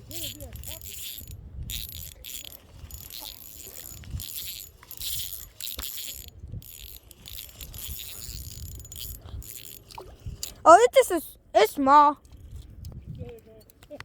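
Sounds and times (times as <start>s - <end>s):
fishing reel rattling: 0.0s - 10.6s
reel clicks: 0.0s - 10.6s.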